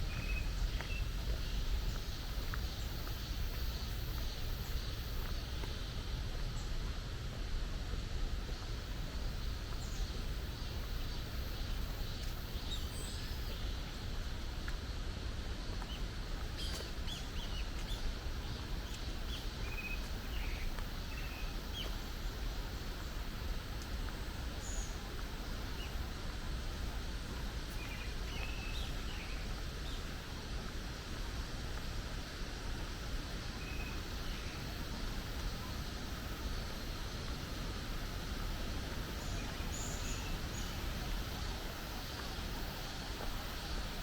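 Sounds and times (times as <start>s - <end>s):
small birds chirping: 0.0s - 6.8s, 15.8s - 30.5s, 32.9s - 44.0s
low background noise: 0.0s - 44.0s.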